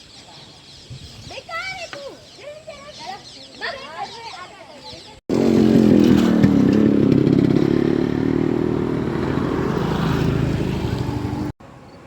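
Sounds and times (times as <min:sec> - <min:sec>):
loud motor engine running: 0:05.3 - 0:11.5.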